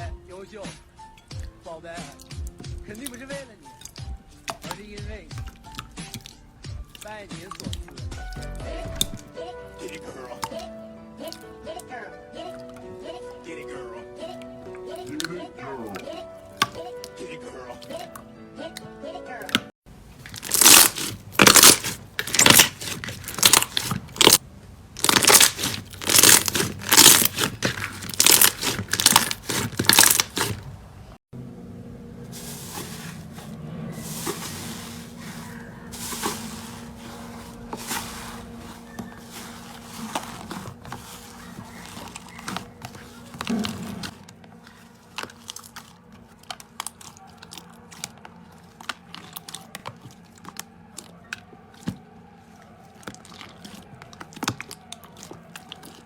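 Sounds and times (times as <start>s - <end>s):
slime crunching and squishing: 1.4s - 9.3s, 19.5s - 30.9s, 32.3s - 56.0s.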